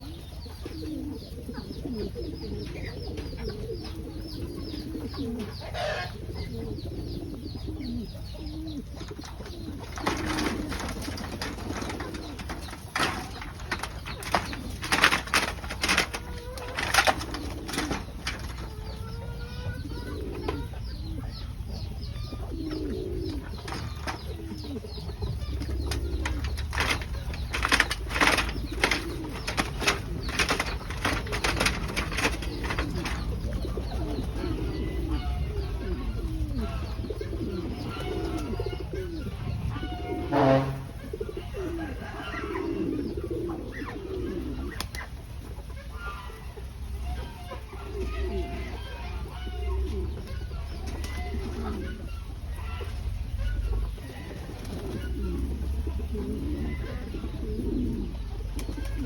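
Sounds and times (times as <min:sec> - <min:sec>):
pigeons cooing: 0:00.0 - 0:59.0
wing flaps and clatters: 0:08.9 - 0:19.1, 0:22.8 - 0:35.4.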